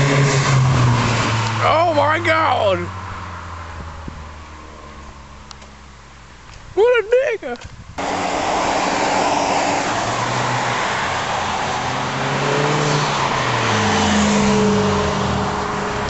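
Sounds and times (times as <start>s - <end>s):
car engine driving past: 8.0s - 16.0s
loud rush of noise: 8.0s - 16.0s.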